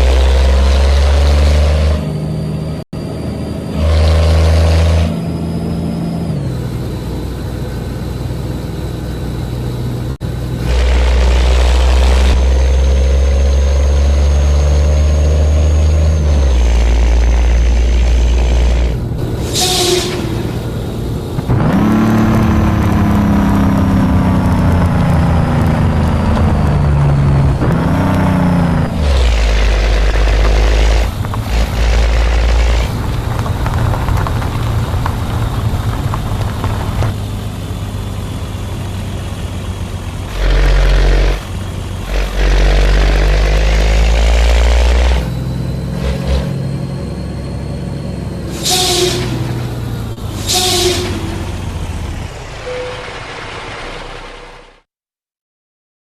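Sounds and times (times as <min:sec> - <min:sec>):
truck diesel engine under load: 0:00.0 - 0:54.9
air hisses: 0:19.4 - 0:20.5, 0:50.3 - 0:51.3.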